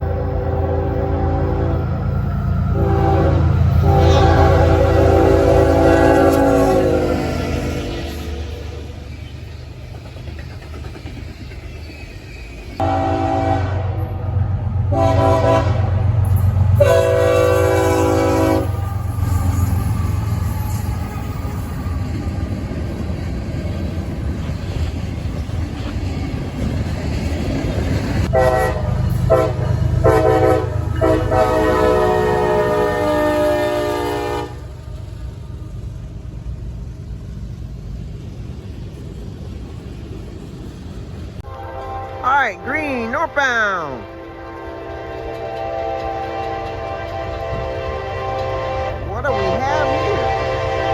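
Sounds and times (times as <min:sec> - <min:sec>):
locomotive air horn blasts: 0:00.0 - 0:02.0, 0:02.7 - 0:08.4, 0:12.8 - 0:14.3, 0:14.9 - 0:16.1, 0:16.8 - 0:18.8, 0:28.3 - 0:34.7, 0:41.4 - 0:50.9
locomotive rumbling past: 0:00.0 - 0:50.9.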